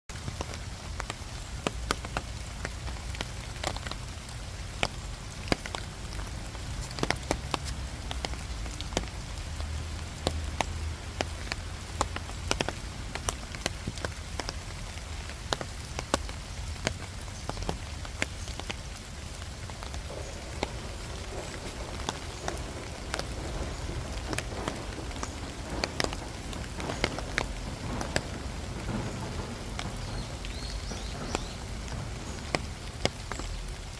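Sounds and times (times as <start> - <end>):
rain falling: 0.1 - 33.9
drops tapping: 17.6 - 33.8.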